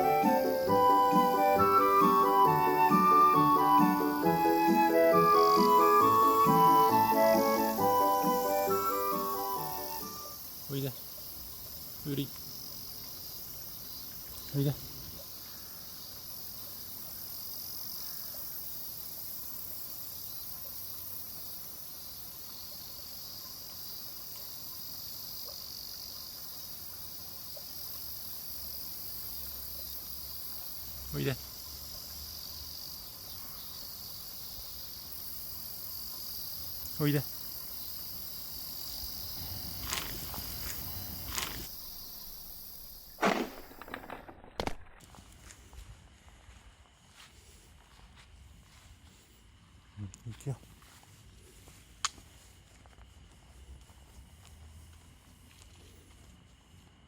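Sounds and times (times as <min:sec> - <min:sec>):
insects chirring: 0:00.0 - 0:57.0
loud rustle: 0:39.7 - 0:45.4.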